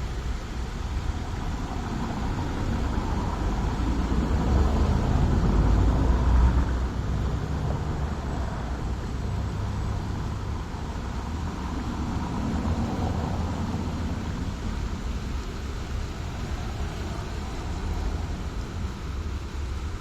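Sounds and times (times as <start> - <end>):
road traffic rumble: 0.0 - 20.0.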